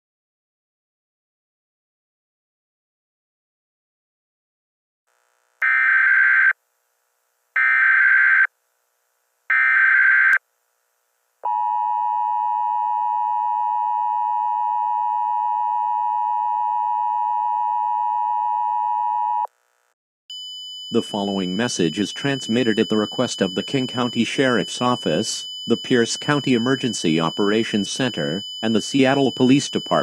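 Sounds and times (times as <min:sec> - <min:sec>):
data tone bursts: 0:20.3 - 0:30.0
steady two-tone attention signal: 0:20.3 - 0:30.0.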